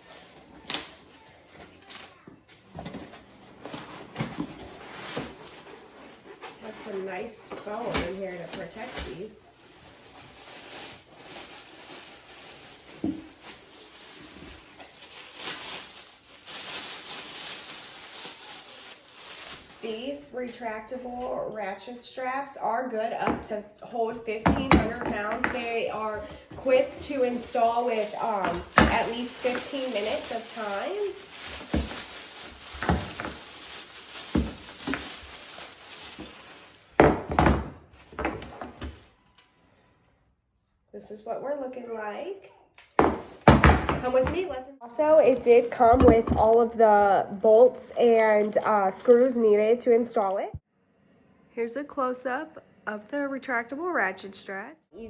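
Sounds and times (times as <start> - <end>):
foam and cardboard rustling: 2.6 - 20.2, 25.0 - 39.2
hard objects knocking and clattering: 28.1 - 29.8, 37.0 - 39.0, 43.0 - 44.5, 45.3 - 47.1.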